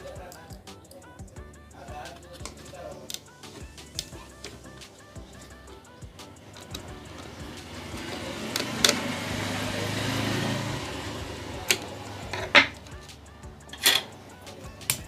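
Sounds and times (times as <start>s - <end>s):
noisy humming: 2.3s - 15.0s.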